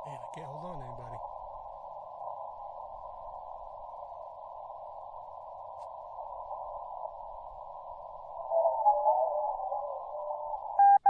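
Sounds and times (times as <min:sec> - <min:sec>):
radio receiver hiss: 0:00.0 - 0:11.0
faint click: 0:05.7 - 0:06.0.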